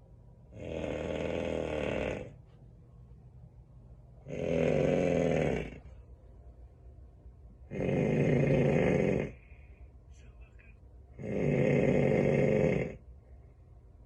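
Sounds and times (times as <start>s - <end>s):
person snoring: 0.5s - 2.4s, 4.2s - 5.9s, 7.7s - 9.4s, 11.2s - 13.0s.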